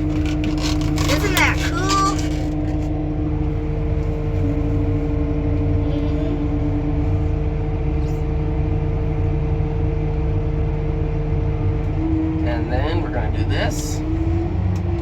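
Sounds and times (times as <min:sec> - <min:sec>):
steady hum: 0:00.0 - 0:15.0
tractor engine rumbling: 0:00.0 - 0:15.0.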